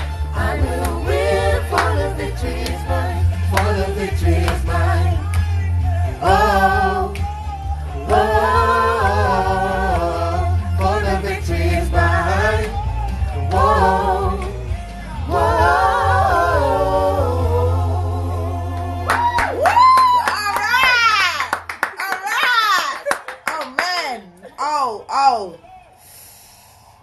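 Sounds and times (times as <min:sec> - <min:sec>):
steady bass: 0:00.0 - 0:19.7
vocal group singing gospel: 0:00.0 - 0:19.9.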